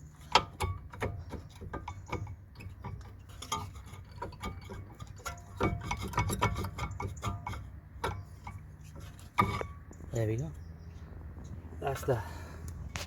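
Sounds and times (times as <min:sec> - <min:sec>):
metallic clicks and knocks: 0:00.2 - 0:10.0.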